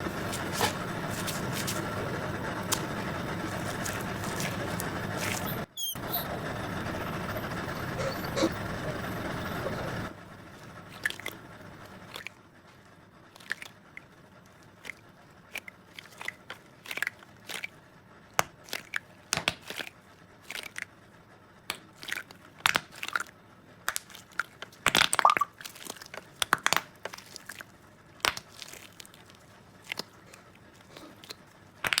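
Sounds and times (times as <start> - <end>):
squishy toy crackling and crunching: 0.0 - 5.7, 18.4 - 21.0, 21.6 - 32.0.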